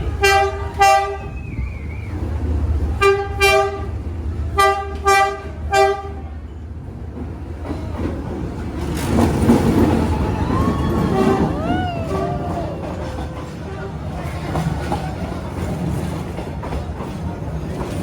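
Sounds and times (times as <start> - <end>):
rushing traffic noise: 0.0 - 18.0
low engine rumble: 6.2 - 14.7.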